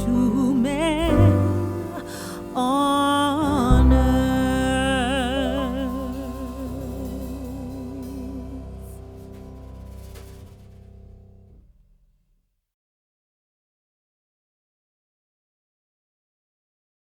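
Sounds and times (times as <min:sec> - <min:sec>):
sustained music chords: 0:00.0 - 0:11.6.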